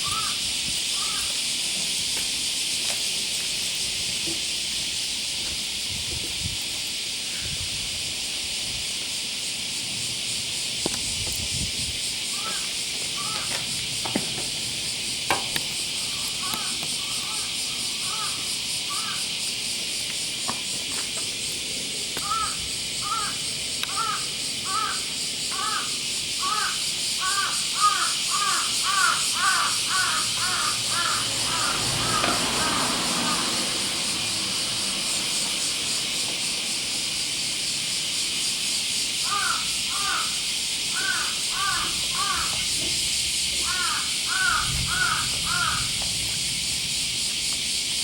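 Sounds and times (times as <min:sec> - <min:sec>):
bird calling: 0:00.0 - 0:01.4, 0:12.3 - 0:13.8, 0:16.0 - 0:19.3, 0:22.2 - 0:34.0, 0:39.2 - 0:43.0, 0:43.6 - 0:45.9
high pulsing hiss: 0:00.0 - 0:48.0.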